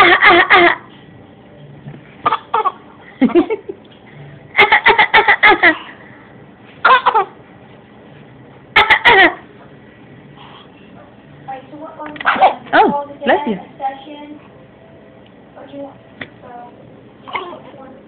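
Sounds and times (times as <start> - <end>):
baby laughing: 0.0 - 0.9, 2.2 - 3.6, 4.6 - 6.0, 6.8 - 7.4, 8.8 - 9.4.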